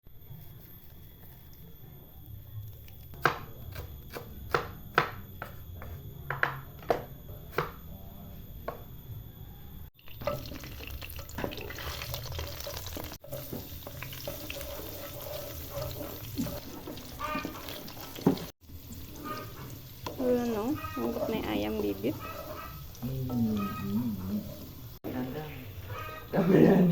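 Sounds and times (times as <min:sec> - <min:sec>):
stirring noise: 0:10.0 - 0:24.7.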